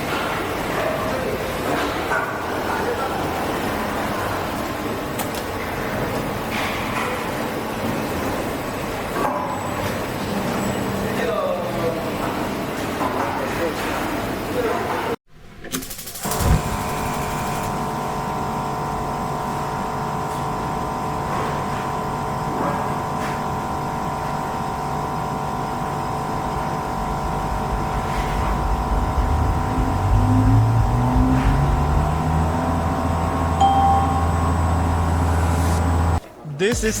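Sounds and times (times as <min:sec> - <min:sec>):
motor spinning up: 0:16.1 - 0:17.8, 0:27.6 - 0:33.7, 0:34.6 - 0:36.2
steady machine hum: 0:16.2 - 0:37.0.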